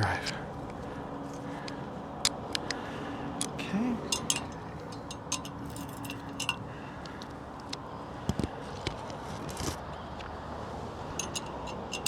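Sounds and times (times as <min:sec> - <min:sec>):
metal hand tools clinking: 0:04.1 - 0:06.6, 0:11.2 - 0:12.0.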